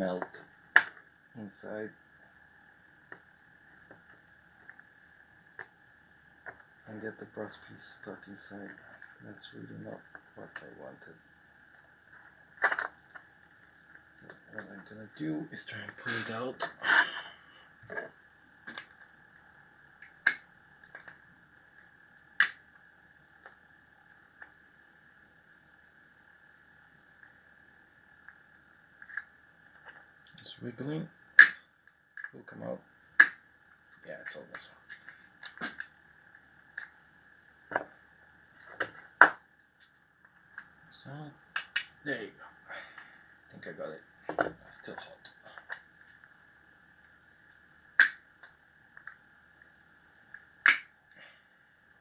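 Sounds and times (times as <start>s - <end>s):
faint high hum: 0.0s - 52.0s.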